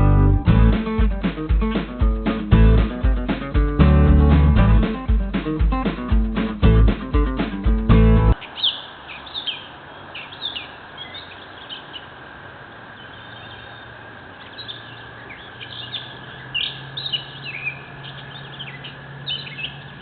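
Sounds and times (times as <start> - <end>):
songbirds chirping: 7.8 - 20.0.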